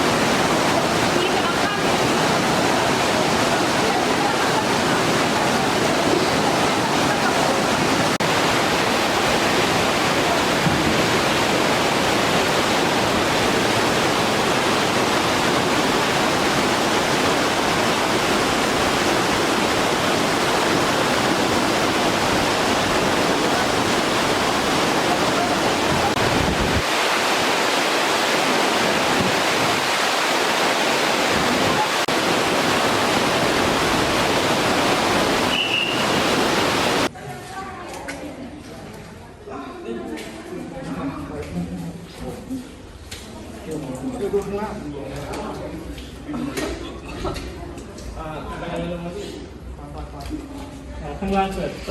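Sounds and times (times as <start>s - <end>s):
floodwater rushing: 0.0s - 37.1s.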